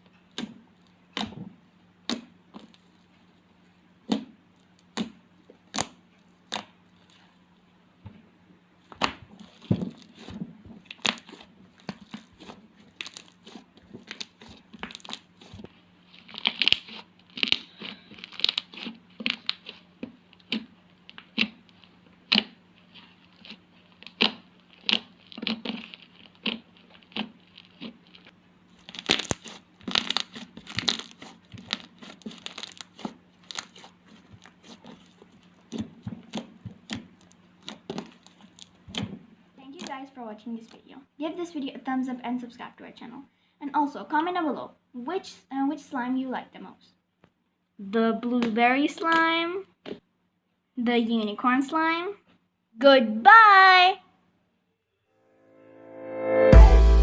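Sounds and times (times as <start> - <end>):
slime popping and crackling: 9.0 - 40.9.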